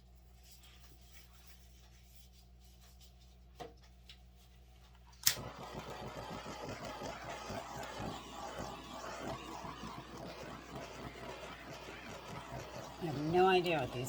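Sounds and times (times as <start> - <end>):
low hum: 5.2 - 14.0
hairdryer rushing air: 5.3 - 14.0.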